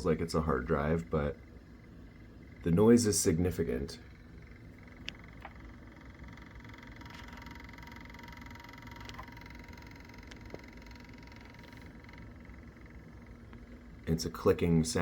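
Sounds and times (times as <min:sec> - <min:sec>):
computer whirring: 0:00.0 - 0:15.0
faint high whine: 0:00.0 - 0:15.0.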